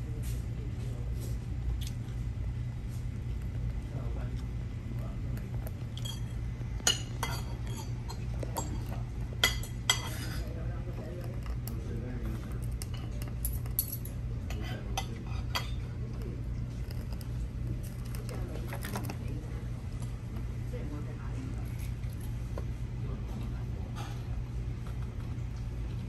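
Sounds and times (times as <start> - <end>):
cutlery and dishes clinking: 5.9 - 10.6.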